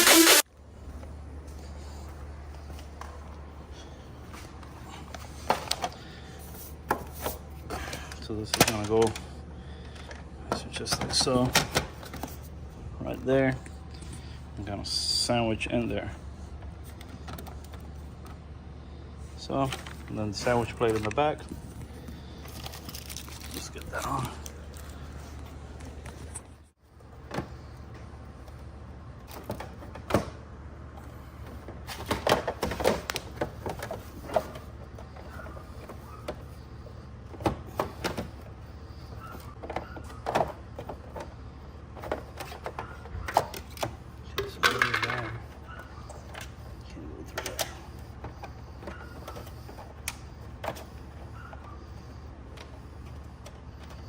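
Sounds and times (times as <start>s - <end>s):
plastic parts scraping: 0.0s - 0.4s, 19.6s - 26.5s.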